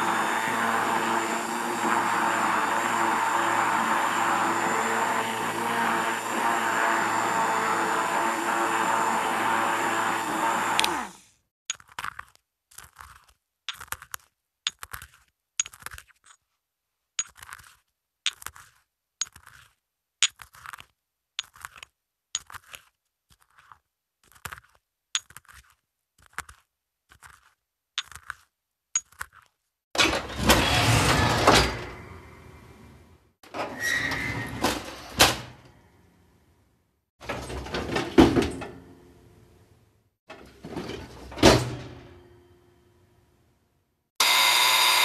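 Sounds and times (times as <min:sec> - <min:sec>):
electric mixer running: 0:00.0 - 0:11.2, 0:44.2 - 0:45.0
mortar and pestle grinding: 0:11.7 - 0:16.5, 0:17.2 - 0:29.7
oven door opening: 0:30.0 - 0:32.4, 0:33.5 - 0:35.7, 0:37.2 - 0:38.9, 0:40.3 - 0:42.2.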